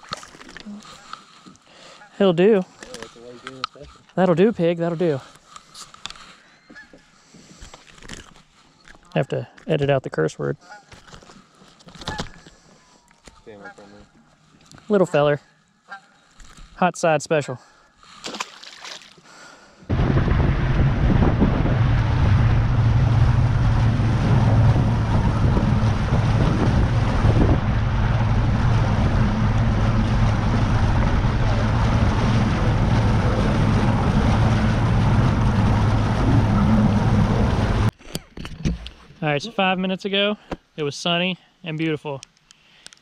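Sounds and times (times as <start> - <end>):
water rushing past hull: 18.2 - 19.2, 19.9 - 37.9
wind buffeting microphone: 19.9 - 37.9
outboard motor running: 19.9 - 38.0.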